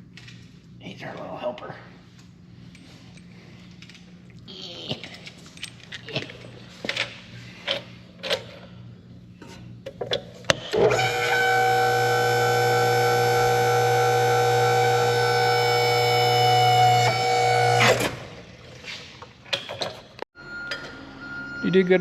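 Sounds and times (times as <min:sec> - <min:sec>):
electric motor whine: 0:10.7 - 0:18.2.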